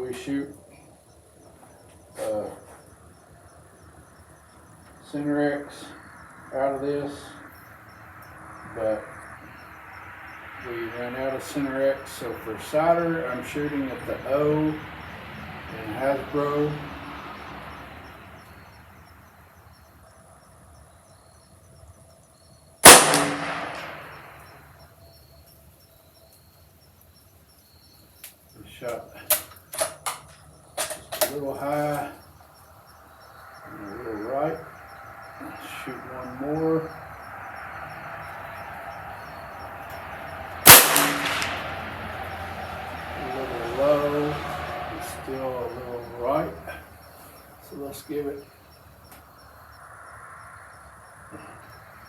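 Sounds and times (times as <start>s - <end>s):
rifle shot with echo: 22.8s - 24.6s, 40.6s - 42.2s.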